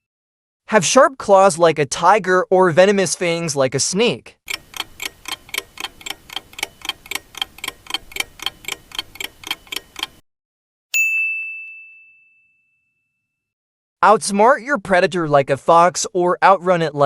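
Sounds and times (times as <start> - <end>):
clock ticking: 4.5 - 10.2
ding: 10.9 - 13.5.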